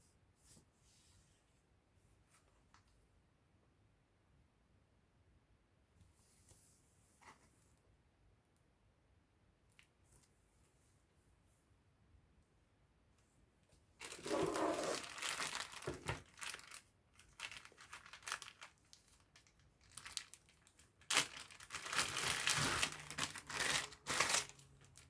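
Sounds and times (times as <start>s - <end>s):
packaging material crinkling: 14.0s - 25.0s.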